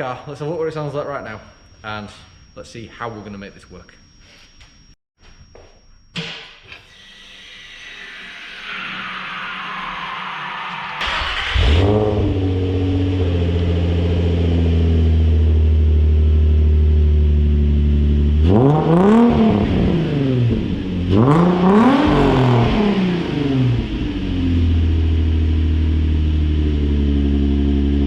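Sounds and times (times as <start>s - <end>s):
car engine starting and revving: 9.1s - 28.0s.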